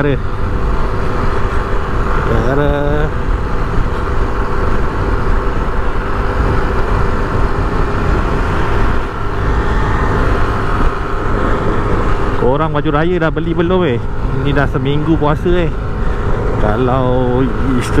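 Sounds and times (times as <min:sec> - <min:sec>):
motorcycle engine running: 0:00.0 - 0:18.0
road rumble: 0:00.0 - 0:18.0
wind noise on microphone: 0:00.2 - 0:12.5.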